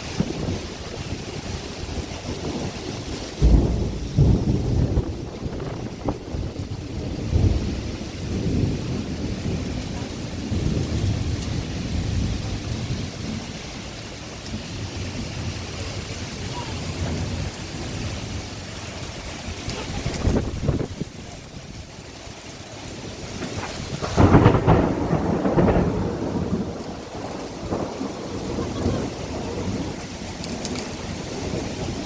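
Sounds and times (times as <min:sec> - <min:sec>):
strong wind gusting: 0:00.0 - 0:13.4, 0:14.6 - 0:22.0
steady rain falling: 0:00.0 - 0:32.0.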